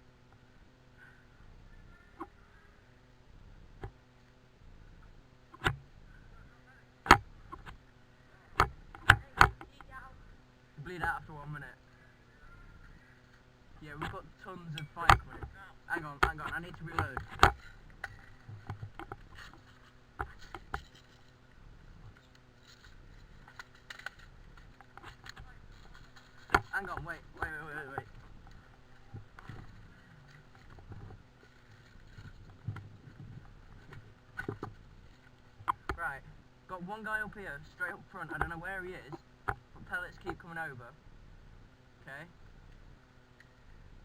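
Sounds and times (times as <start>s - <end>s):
gear clicking and scraping: 13.2s - 36.2s.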